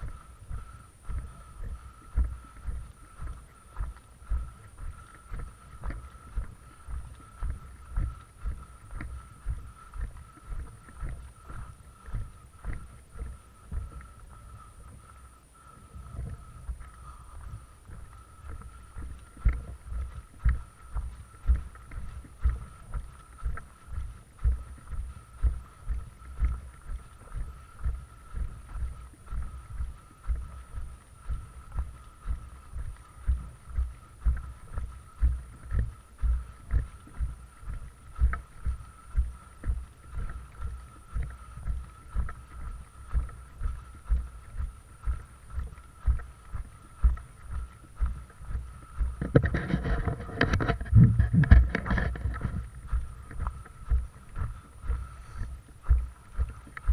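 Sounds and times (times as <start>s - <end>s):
wind on microphone: 0.0s - 56.9s
footsteps walking: 39.6s - 56.9s.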